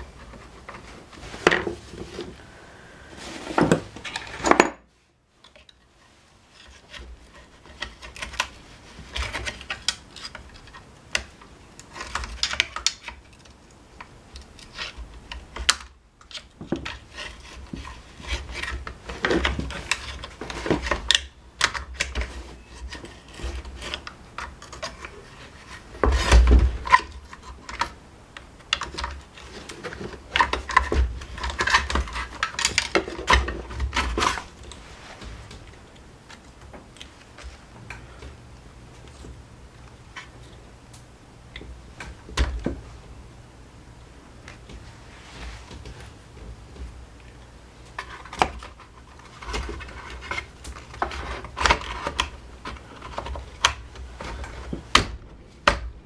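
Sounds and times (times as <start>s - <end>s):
parts and tools clattering: 3.2s - 5.9s.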